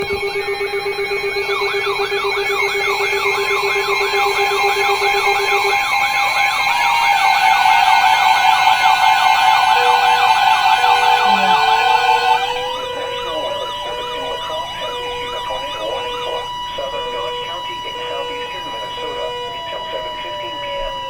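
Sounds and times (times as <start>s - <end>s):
sweeping electronic siren tone: 0.0s - 21.0s
two-note attention tone: 9.5s - 17.4s
steady alert tones: 9.7s - 17.4s.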